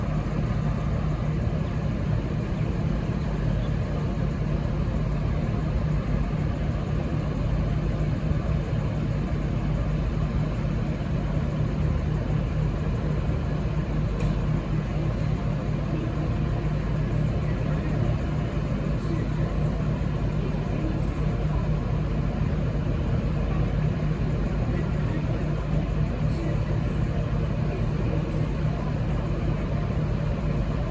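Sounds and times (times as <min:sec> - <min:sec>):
diesel railcar engine idling: 0:00.0 - 0:30.9
faint tick: 0:14.2 - 0:14.4.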